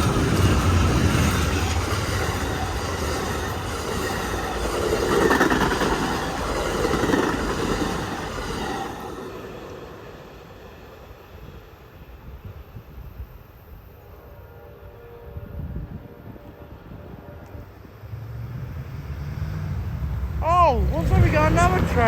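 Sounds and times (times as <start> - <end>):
train wheels rumbling and clacking: 0.0 - 13.2.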